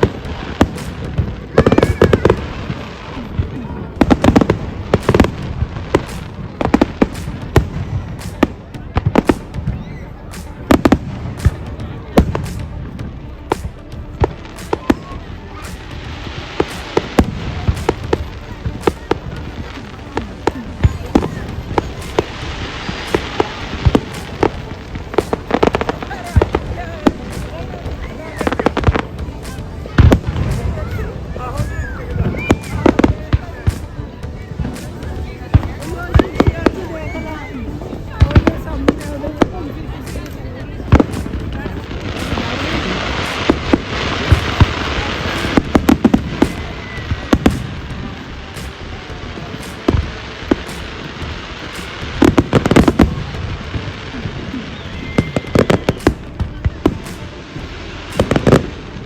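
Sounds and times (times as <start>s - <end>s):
fireworks bangs and pops: 0.0s - 59.0s
noisy hiss: 0.0s - 59.0s.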